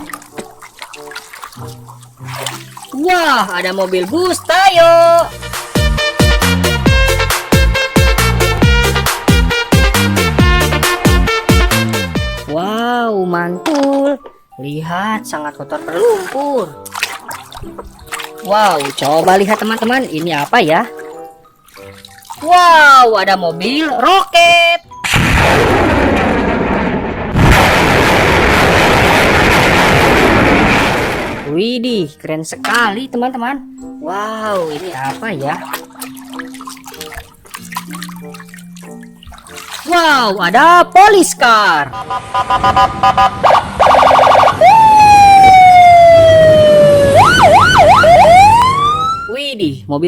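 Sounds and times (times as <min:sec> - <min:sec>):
electronic police siren: 0:41.9 - 0:49.3.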